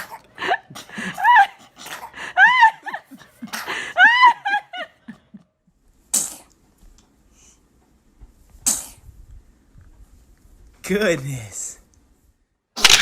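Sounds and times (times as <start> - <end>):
baby sneezing: 6.1 - 6.5, 8.6 - 9.0.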